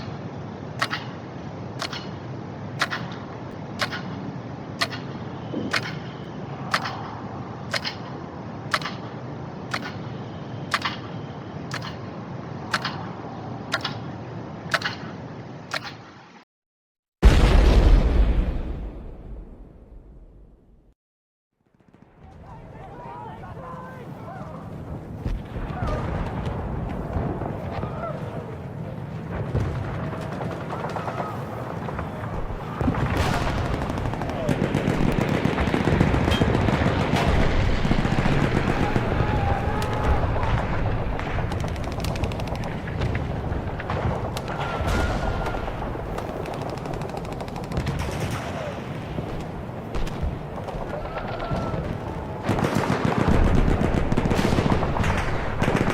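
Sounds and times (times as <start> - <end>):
distant shelling rumble: 0.0 - 16.2, 21.6 - 55.9
sharp cracks: 0.8 - 1.2, 1.8 - 2.2, 2.8 - 10.1, 10.7 - 12.1, 12.7 - 14.1, 14.7 - 16.2, 29.5 - 55.9.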